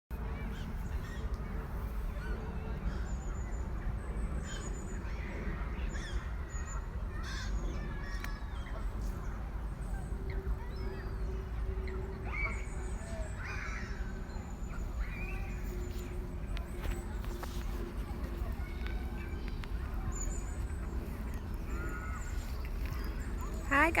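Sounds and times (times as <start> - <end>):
steady low rumble: 8.7 - 24.0.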